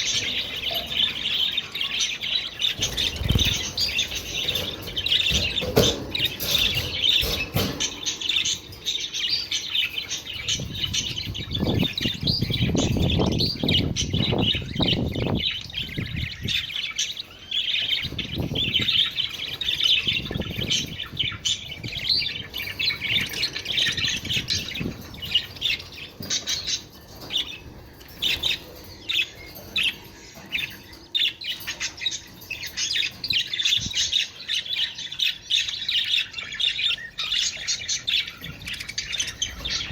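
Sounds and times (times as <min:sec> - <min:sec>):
budgerigars chirping: 0:00.0 - 0:39.9.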